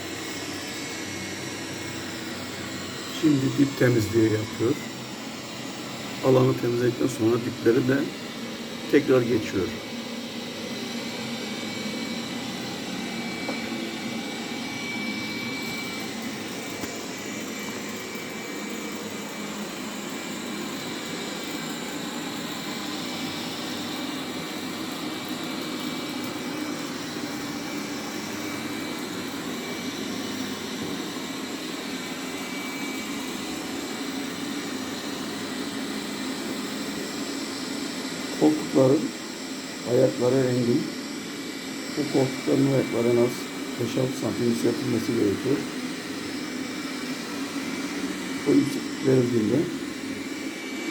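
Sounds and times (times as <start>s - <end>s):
robot vacuum whirring: 0.0s - 50.9s.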